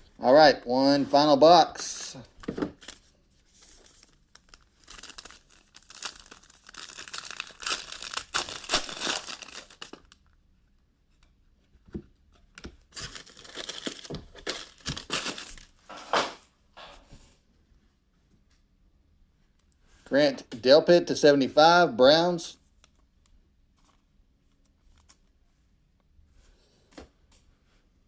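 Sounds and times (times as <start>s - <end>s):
wrapping torn and crinkled: 2.8s - 10.4s, 12.9s - 15.8s.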